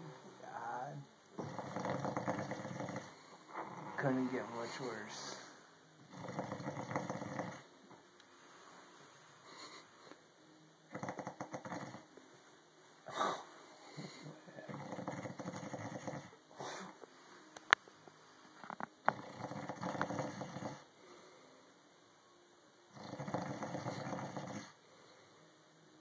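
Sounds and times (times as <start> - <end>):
noisy breaths: 0.0 - 22.0, 22.9 - 25.7
man snoring loudly: 0.4 - 4.4, 6.0 - 7.7, 10.9 - 12.1, 14.0 - 16.4, 19.0 - 20.9, 22.9 - 24.8.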